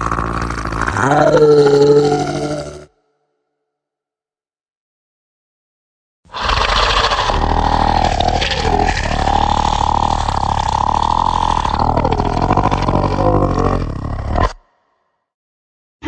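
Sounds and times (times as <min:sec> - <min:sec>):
motor engine running: 0:00.0 - 0:01.2.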